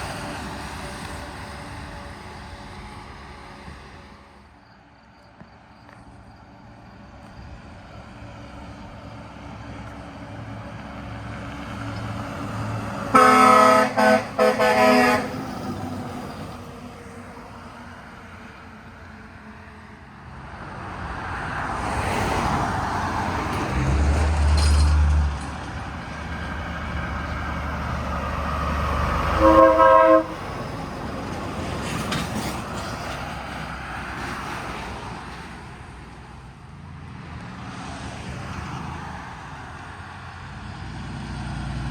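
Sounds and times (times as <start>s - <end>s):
heavy vehicle passing: 7.6s - 31.9s, 32.6s - 41.9s
air horn blasts: 13.1s - 15.4s, 29.3s - 30.5s.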